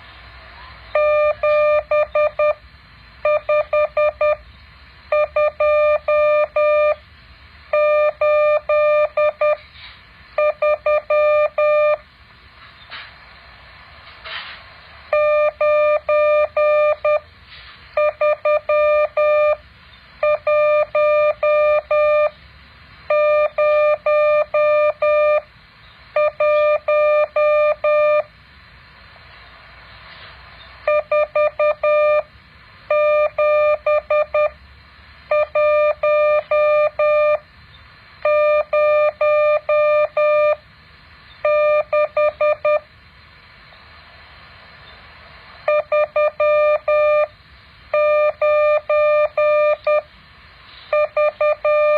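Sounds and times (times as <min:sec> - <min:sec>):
morse code beeps: 0:00.9 - 0:02.6, 0:03.2 - 0:04.4, 0:05.1 - 0:07.0, 0:07.7 - 0:09.6, 0:10.4 - 0:12.0, 0:15.1 - 0:17.2, 0:18.0 - 0:19.6, 0:20.2 - 0:22.4, 0:23.1 - 0:25.5, 0:26.2 - 0:28.3, 0:30.8 - 0:32.3, 0:32.9 - 0:34.6, 0:35.3 - 0:37.4, 0:38.2 - 0:40.6, 0:41.4 - 0:42.9, 0:45.7 - 0:47.3, 0:47.9 - 0:50.1, 0:50.9 - 0:51.9.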